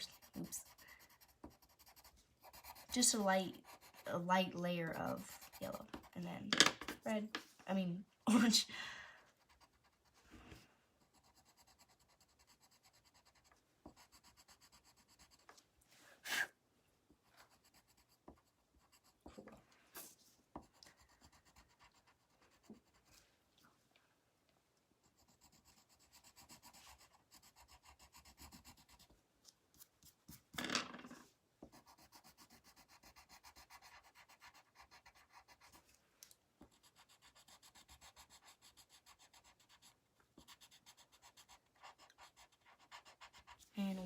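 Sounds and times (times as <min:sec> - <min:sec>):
pencil rubbing on paper: 0:00.0 - 0:06.2, 0:11.1 - 0:15.5, 0:17.4 - 0:19.4, 0:20.0 - 0:23.2, 0:25.1 - 0:29.1, 0:31.7 - 0:35.9, 0:36.7 - 0:44.0.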